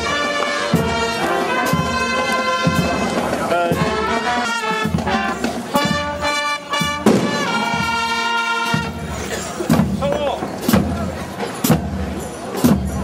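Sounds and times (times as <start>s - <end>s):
brass band playing: 0.0s - 13.0s
sharp drum strokes: 4.7s - 13.0s.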